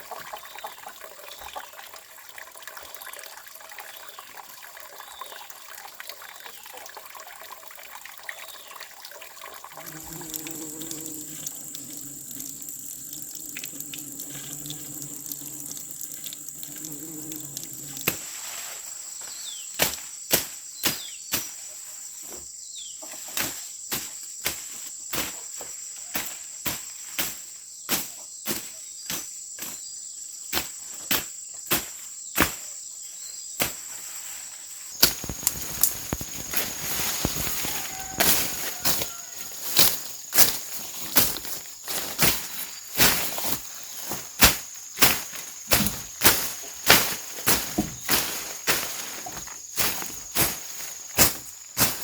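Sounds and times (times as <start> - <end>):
running water: 0.0 - 19.0, 34.9 - 52.0
crickets trilling: 0.0 - 52.0
hand tool striking: 35.0 - 52.0.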